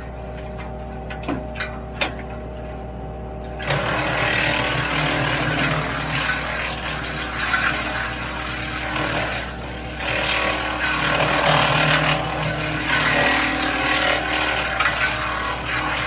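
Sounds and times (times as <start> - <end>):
wood chipper humming: 0.0 - 16.0
loud rough grinding noise: 3.5 - 16.0.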